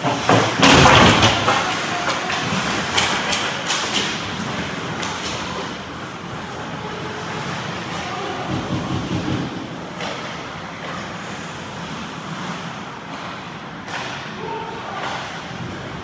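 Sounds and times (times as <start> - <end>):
hockey sticks or puck knocking: 0.0 - 6.5, 13.9 - 14.4
skates scraping on ice: 0.0 - 16.0.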